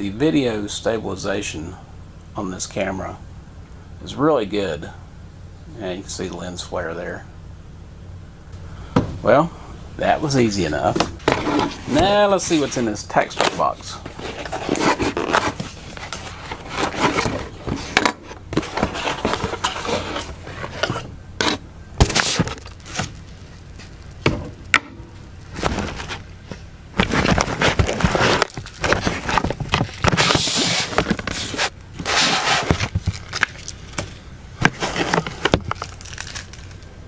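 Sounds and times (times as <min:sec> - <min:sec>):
packaging rustling and crackling: 0:10.8 - 0:24.3, 0:25.2 - 0:36.9.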